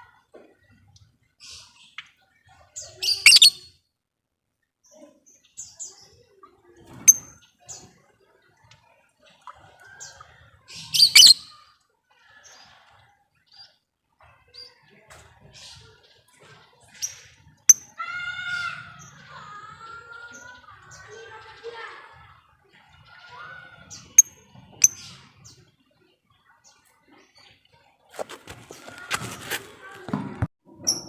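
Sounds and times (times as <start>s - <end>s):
shrill bird chatter: 2.8s - 3.7s, 10.8s - 11.6s
short bird chirps: 3.3s - 3.6s, 11.0s - 11.4s.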